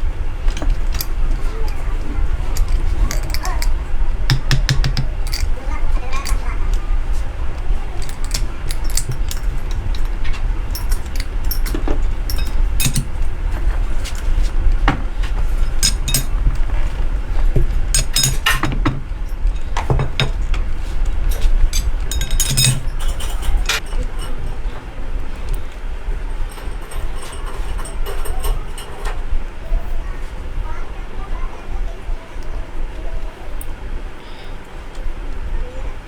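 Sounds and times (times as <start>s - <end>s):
low machine hum: 0.0s - 36.0s
clinks and knocks: 0.4s - 6.5s, 7.9s - 17.0s, 17.6s - 24.9s, 26.4s - 29.2s.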